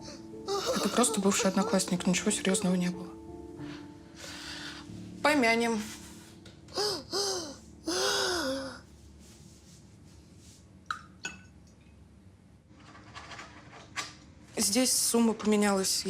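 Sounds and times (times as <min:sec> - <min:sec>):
woman sobbing: 0:00.0 - 0:02.6, 0:06.7 - 0:08.8.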